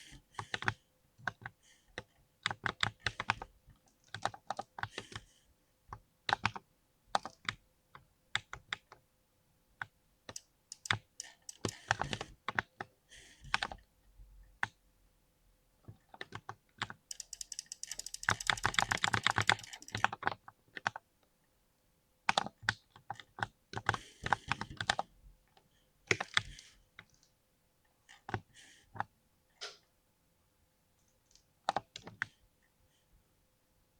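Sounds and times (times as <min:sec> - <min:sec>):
mechanical keyboard typing: 0:10.3 - 0:12.3, 0:16.3 - 0:20.2.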